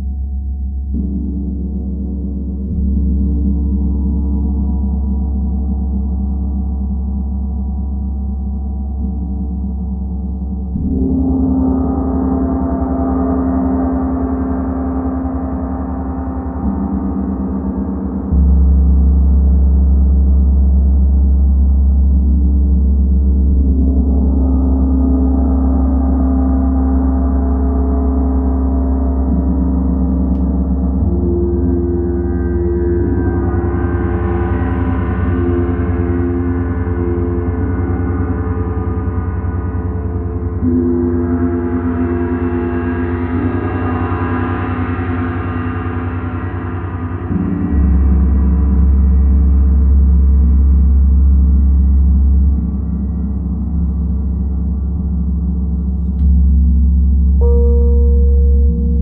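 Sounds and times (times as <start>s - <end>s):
gong ringing: 57.4s - 59.0s.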